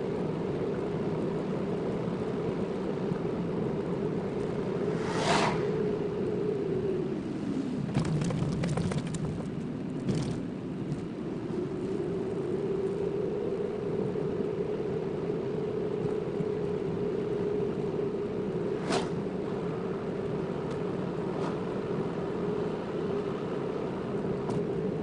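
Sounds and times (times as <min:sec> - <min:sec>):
car engine and tyre noise: 0:00.0 - 0:25.0
rattles and clatters: 0:07.9 - 0:10.4.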